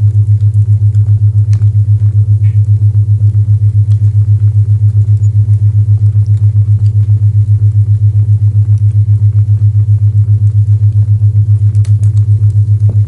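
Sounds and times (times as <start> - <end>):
low pulsing tone: 0.0 - 13.0
fireplace crackles: 11.5 - 13.0.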